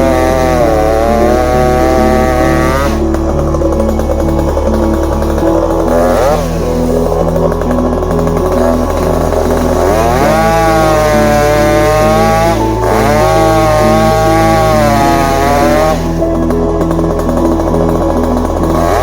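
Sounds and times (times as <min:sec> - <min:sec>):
background music: 0:00.0 - 0:19.0
chainsaw cutting: 0:00.0 - 0:19.0.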